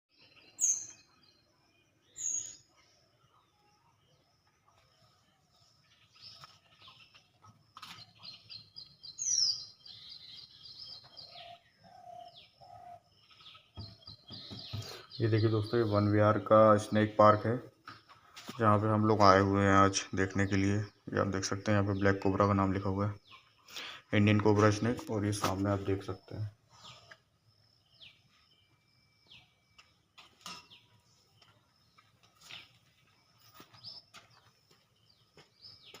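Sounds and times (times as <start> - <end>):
birds chirping: 0.1 - 36.0
faint bird calls: 0.4 - 16.0.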